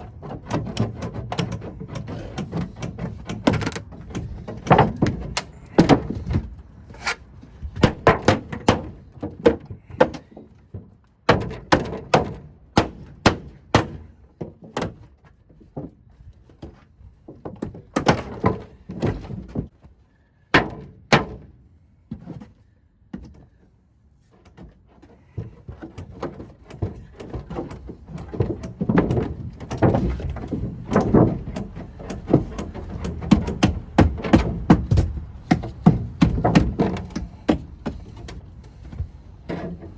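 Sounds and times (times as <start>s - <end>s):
knocks and thuds on ductwork: 0.1s - 6.6s, 7.6s - 15.0s, 20.5s - 22.5s, 25.3s - 39.9s.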